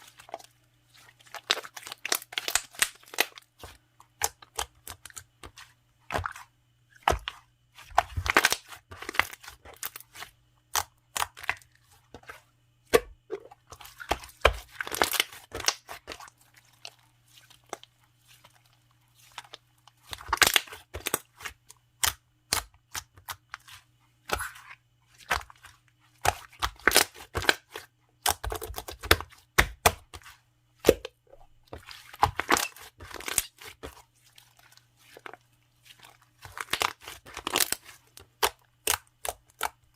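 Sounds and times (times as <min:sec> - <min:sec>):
hands squishing slime: 0:00.0 - 0:39.9.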